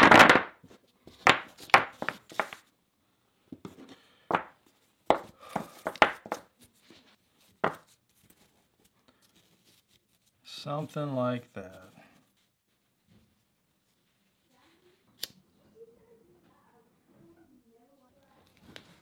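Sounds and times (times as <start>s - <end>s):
wooden pieces clacking together: 0.0s - 2.6s, 5.1s - 6.5s.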